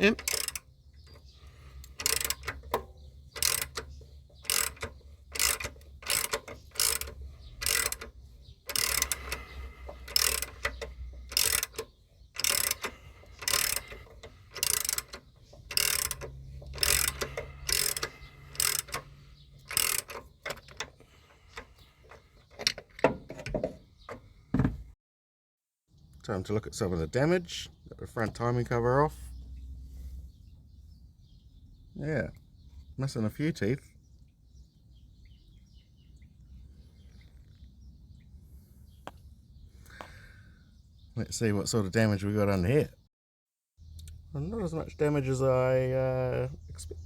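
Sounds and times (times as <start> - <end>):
ratchet wrench clicking: 0.0 - 1.2, 1.8 - 21.7.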